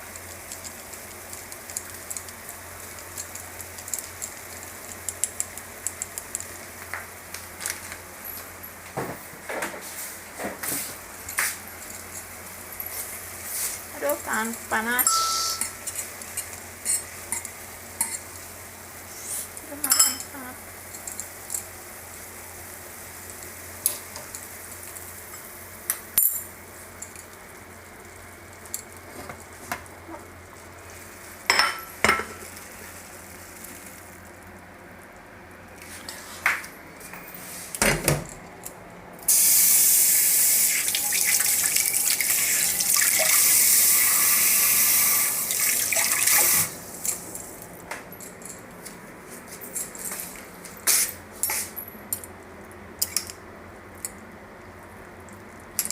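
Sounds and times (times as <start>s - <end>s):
utensils and dishes clinking: 15.0s - 18.3s, 19.8s - 21.7s
kitchen tap running: 39.3s - 46.8s.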